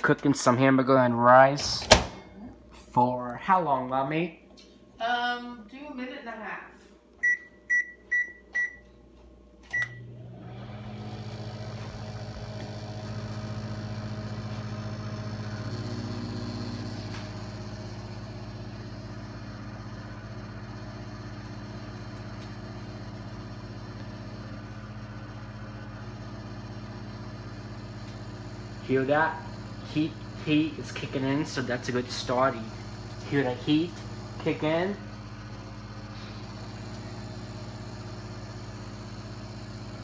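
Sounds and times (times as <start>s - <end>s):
microwave buzzing: 0.0s - 6.0s, 7.1s - 40.0s
microwave oven humming: 0.0s - 40.0s
microwave oven beep: 7.2s - 9.0s, 9.6s - 28.8s.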